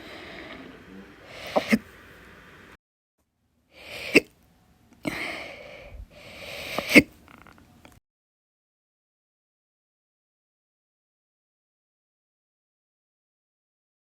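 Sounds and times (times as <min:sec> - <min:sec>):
breathing: 0:00.0 - 0:01.8, 0:05.0 - 0:07.0
person hiccuping: 0:01.5 - 0:01.8.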